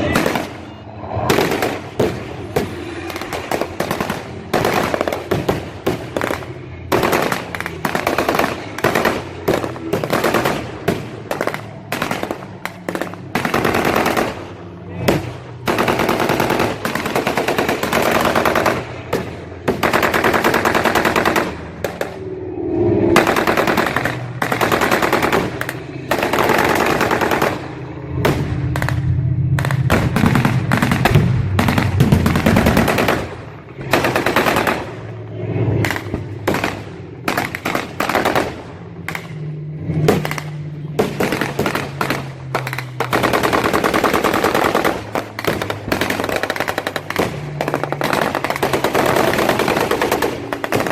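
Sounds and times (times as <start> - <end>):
low steady drone: 0.0 - 50.9
machine-gun bursts: 15.6 - 19.0, 23.2 - 27.7, 41.0 - 50.9.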